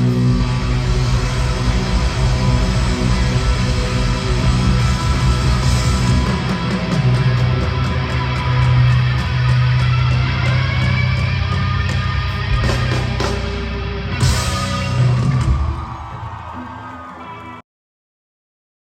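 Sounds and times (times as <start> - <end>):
steady low held note: 0.0 - 12.2
live rock band instrumental: 0.0 - 17.5
electric guitar: 0.0 - 17.6.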